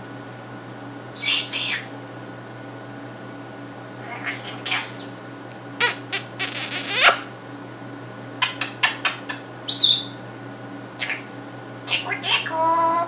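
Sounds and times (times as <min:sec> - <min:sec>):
parrot squawking: 0:01.2 - 0:01.9, 0:04.0 - 0:05.2, 0:05.8 - 0:07.2, 0:08.4 - 0:10.2, 0:11.0 - 0:13.0
parrot whistling: 0:01.2 - 0:01.9, 0:04.4 - 0:05.2, 0:05.8 - 0:07.2, 0:08.4 - 0:10.2.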